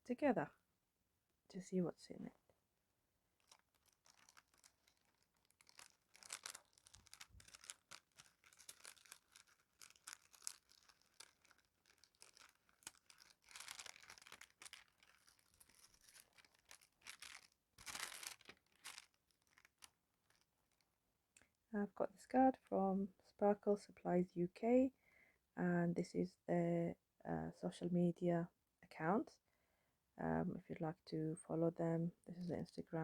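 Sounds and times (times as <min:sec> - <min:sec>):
wrapping paper tearing and crinkling: 0:03.4 - 0:20.9.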